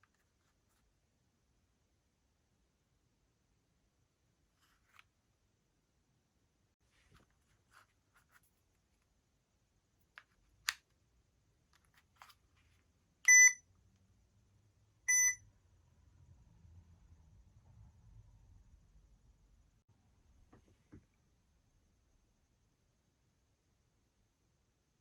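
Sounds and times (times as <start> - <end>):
short electronic beeps: 13.3 - 13.6, 15.1 - 15.4.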